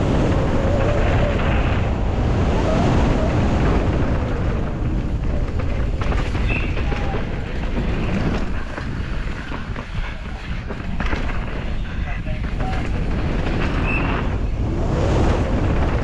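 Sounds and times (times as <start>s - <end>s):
wind buffeting microphone: 0.0s - 16.0s
scattered clicks and knocks: 3.5s - 14.6s.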